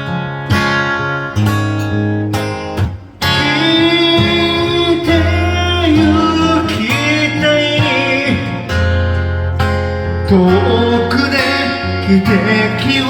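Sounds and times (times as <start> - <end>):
acoustic guitar: 0.0 - 13.0
folk ballad singing: 3.2 - 13.0.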